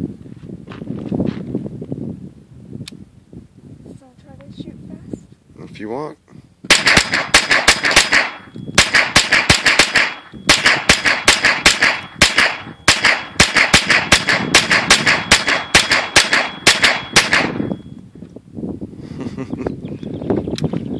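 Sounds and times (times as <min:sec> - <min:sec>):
rifle fired rapidly: 0:06.7 - 0:17.6.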